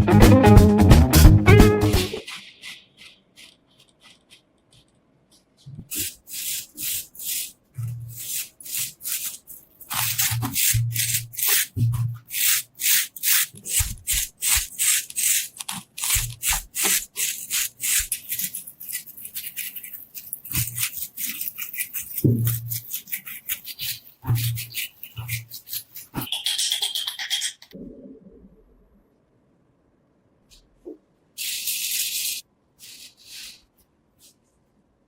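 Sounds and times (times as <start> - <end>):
scrubbing on metal: 2.2 - 27.1.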